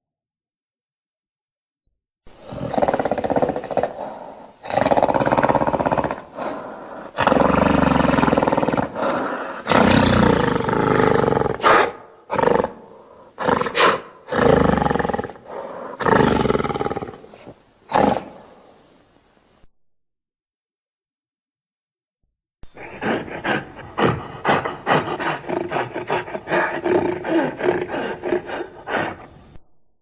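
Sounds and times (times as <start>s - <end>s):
creature roars and growls: 2.4s - 18.4s, 22.8s - 29.3s.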